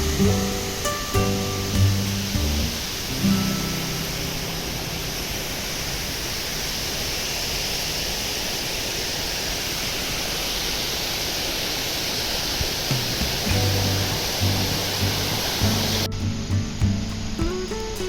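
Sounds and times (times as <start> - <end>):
guitar music: 0.0 - 5.8, 12.9 - 18.0
waterfall roaring: 0.0 - 18.0.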